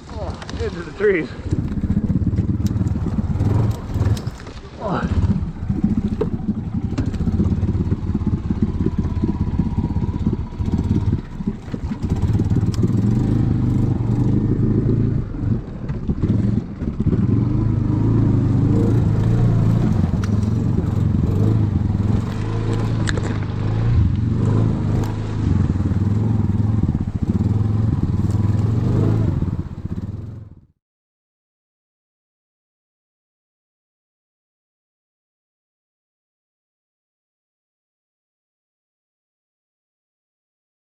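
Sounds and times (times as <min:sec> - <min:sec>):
engine running under load: 0:01.4 - 0:30.6.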